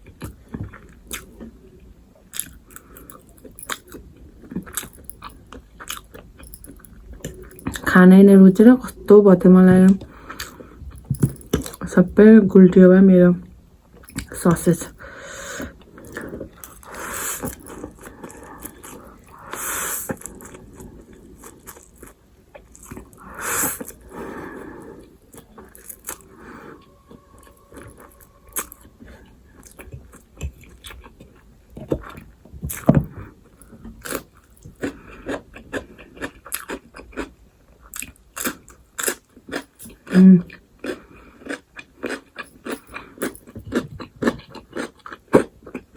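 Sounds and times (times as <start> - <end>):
crunchy chewing: 2.3 - 7.9, 15.7 - 45.9.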